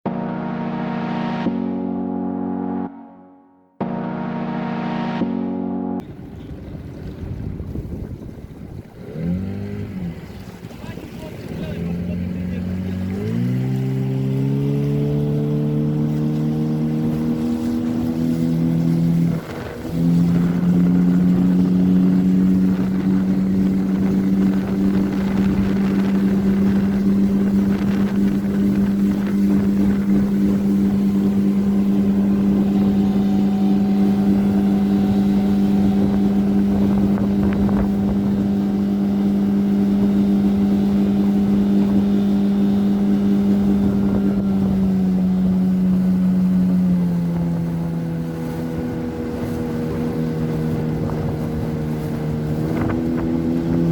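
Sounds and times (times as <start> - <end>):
outboard motor running: 5.2 - 53.9.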